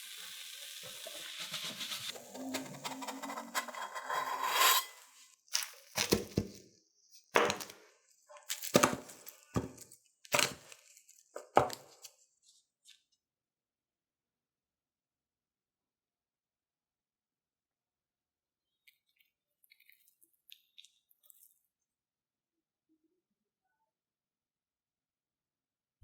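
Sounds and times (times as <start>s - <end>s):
frying sizzle: 0.0s - 3.4s
crispy bread crunching: 7.5s - 12.1s.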